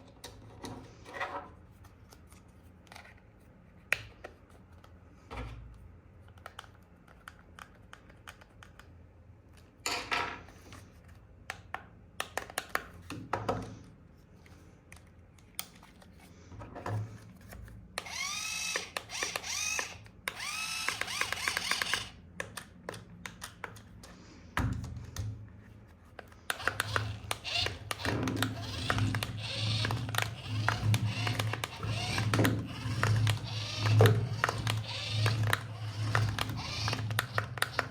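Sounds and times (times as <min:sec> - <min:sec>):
clicks and rustling of plastic toy: 0:14.4 - 0:24.4, 0:26.1 - 0:37.9
small electric motor whirring: 0:18.0 - 0:22.2, 0:26.5 - 0:37.9.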